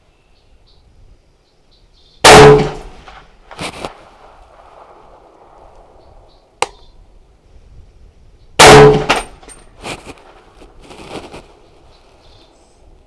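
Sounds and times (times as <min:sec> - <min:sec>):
sharp metallic ping: 0:02.2 - 0:03.0
rifle shot with echo: 0:02.2 - 0:03.4, 0:04.0 - 0:06.9, 0:08.6 - 0:09.5.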